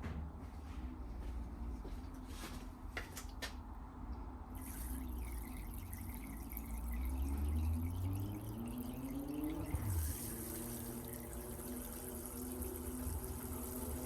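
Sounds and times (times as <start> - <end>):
liquid pouring: 4.6 - 14.0.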